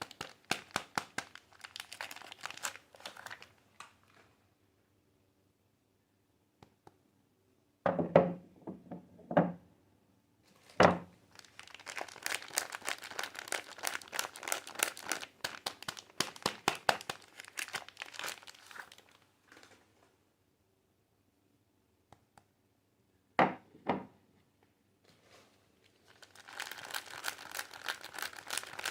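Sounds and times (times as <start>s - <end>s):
wrapper crinkling and tearing: 0.0s - 4.2s, 10.6s - 19.8s, 25.8s - 28.9s.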